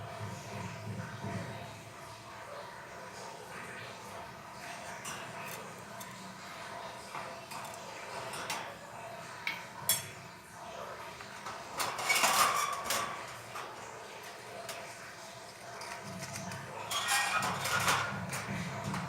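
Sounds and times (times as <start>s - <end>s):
clattering: 11.2s - 19.0s.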